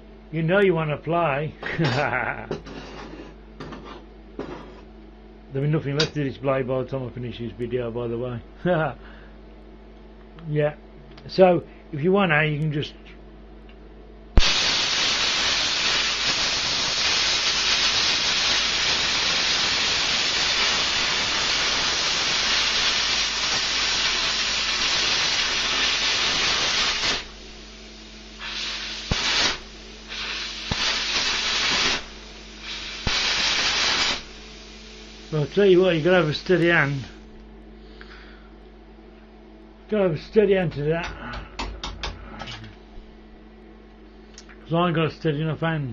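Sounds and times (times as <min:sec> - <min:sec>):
plasma cutter arc crack: 0:14.4 - 0:27.4, 0:28.0 - 0:37.0
plasma cutter hissing: 0:14.4 - 0:37.2.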